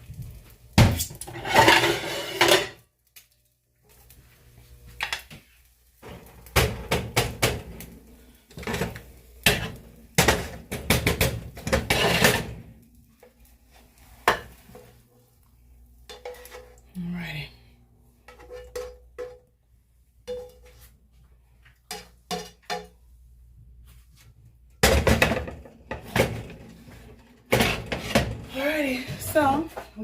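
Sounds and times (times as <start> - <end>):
spatula scraping a frying pan: 1.3 - 2.7, 11.6 - 12.6, 16.1 - 16.8, 26.0 - 28.6.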